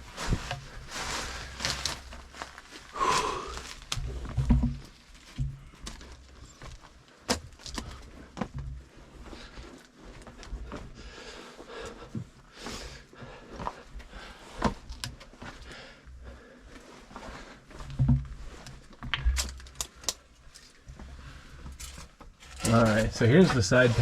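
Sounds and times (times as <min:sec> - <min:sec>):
body scraping against rock: 0:00.0 - 0:06.9, 0:20.6 - 0:24.0.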